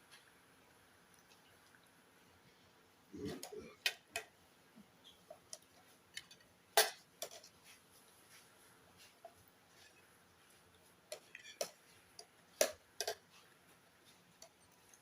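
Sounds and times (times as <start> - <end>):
utensils and dishes clinking: 11.1 - 12.0.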